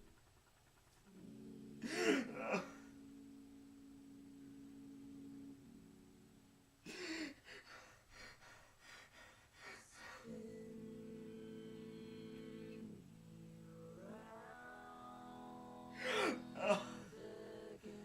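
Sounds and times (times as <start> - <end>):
background music held notes: 0.0 - 7.2, 10.3 - 18.0
person gasping and breathing heavily: 16.0 - 17.0.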